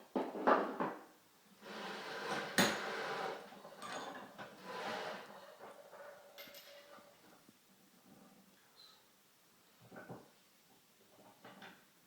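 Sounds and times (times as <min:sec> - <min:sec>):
metal tools scraping and clinking: 0:03.7 - 0:04.5, 0:06.1 - 0:07.2.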